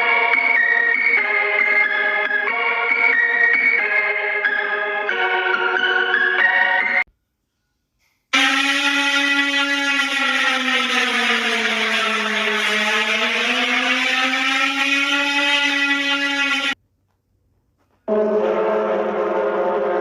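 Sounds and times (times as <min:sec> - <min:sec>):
buzzy horn-like alarm drone: 0:08.3 - 0:16.8, 0:18.1 - 0:20.0
synthesizer tone: 0:18.1 - 0:20.0.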